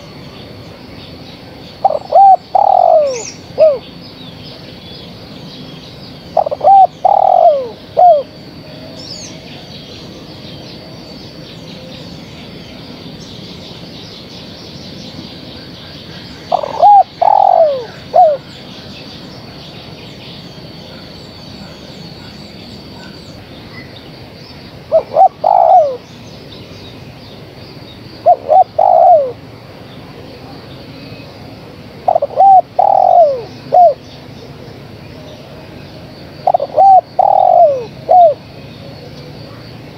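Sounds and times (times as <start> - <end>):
small birds chirping: 0.0 - 39.9
dove cooing: 1.8 - 3.9, 6.4 - 8.4, 16.5 - 18.5, 24.9 - 26.0, 28.2 - 29.4, 32.0 - 34.0, 36.4 - 38.4.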